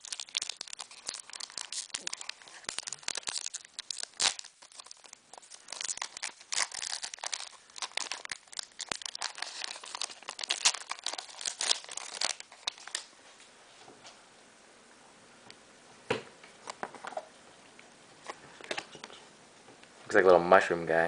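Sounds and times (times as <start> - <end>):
foil wrapper crinkling and tearing: 0.0 - 13.1.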